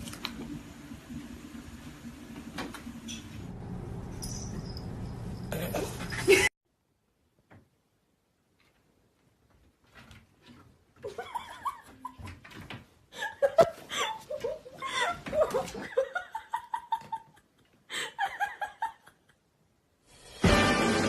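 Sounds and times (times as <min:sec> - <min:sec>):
person laughing: 0:05.5 - 0:06.5, 0:13.2 - 0:19.4.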